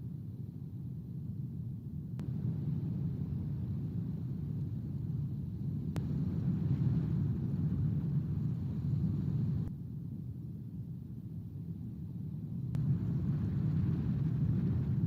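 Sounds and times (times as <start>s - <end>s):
wind buffeting microphone: 12.8s - 15.0s.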